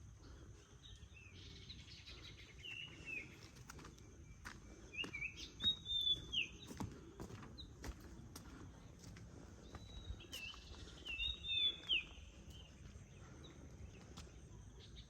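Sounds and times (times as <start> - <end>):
birds singing: 0.2 - 15.0.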